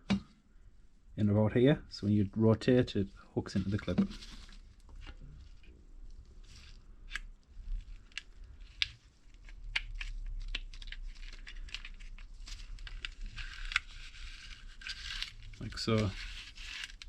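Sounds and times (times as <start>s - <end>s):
rustling of parts handled: 7.6s - 17.0s.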